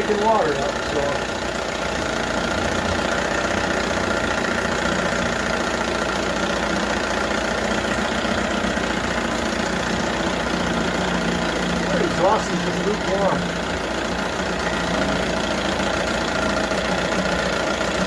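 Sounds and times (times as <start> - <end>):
outboard motor running: 0.0 - 18.0.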